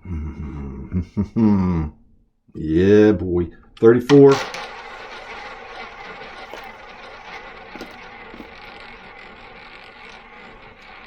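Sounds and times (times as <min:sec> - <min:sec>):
roulette wheel rattling: 0:04.1 - 0:11.0.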